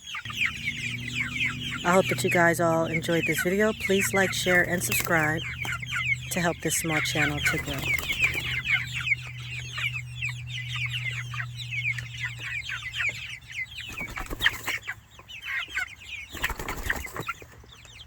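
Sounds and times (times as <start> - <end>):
chicks peeping and cheeping: 0.0 - 18.0
low steady hum: 0.2 - 14.5.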